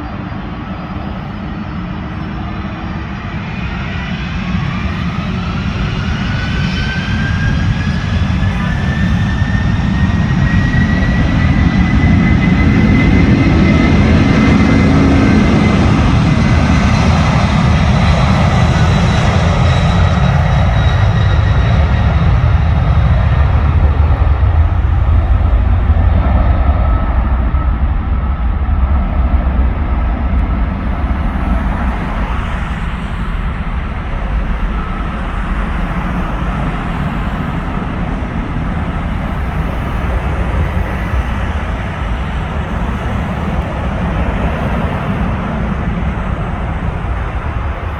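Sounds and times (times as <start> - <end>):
jet engines roaring: 0.0 - 47.9.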